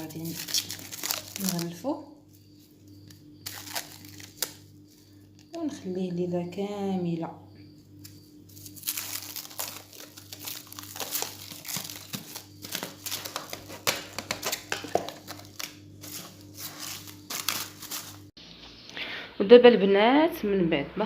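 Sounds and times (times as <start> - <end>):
food wrap crinkling: 0.0 - 1.9, 3.4 - 5.1, 8.5 - 18.3.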